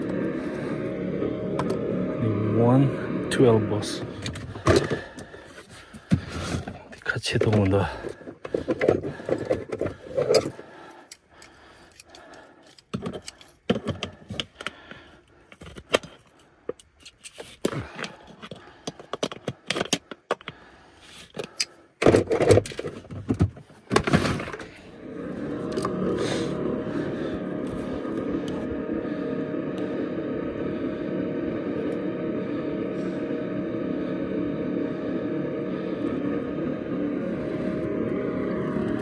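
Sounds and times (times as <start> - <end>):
steady motor hum: 0.0 - 15.1, 23.1 - 39.0.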